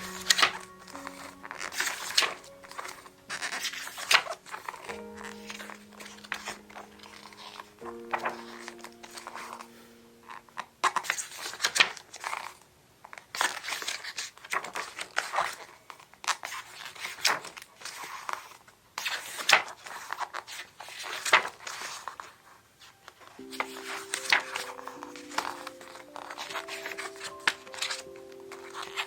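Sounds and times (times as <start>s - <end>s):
background music: 0.0s - 10.8s, 22.9s - 29.0s.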